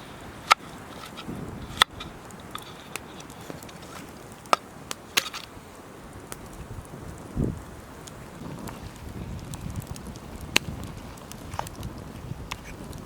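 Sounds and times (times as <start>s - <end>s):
campfire crackling: 0.0s - 13.0s
sharp fire pops: 0.0s - 13.0s
steady fire hiss: 0.0s - 13.0s.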